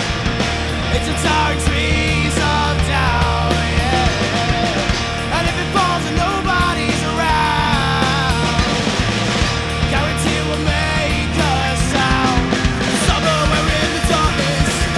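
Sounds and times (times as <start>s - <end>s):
pop-punk band playing: 0.0s - 14.9s.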